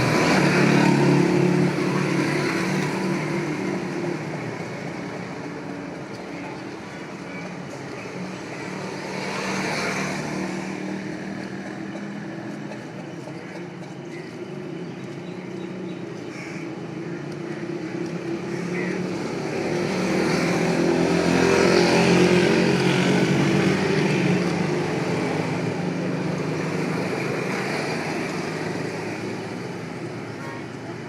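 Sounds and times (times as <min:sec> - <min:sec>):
vehicle engine passing by: 0:18.3 - 0:30.0.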